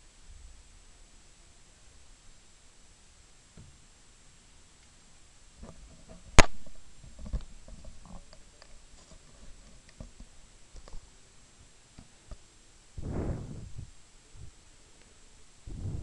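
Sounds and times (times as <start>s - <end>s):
faint clicks and taps: 7.1s - 11.1s.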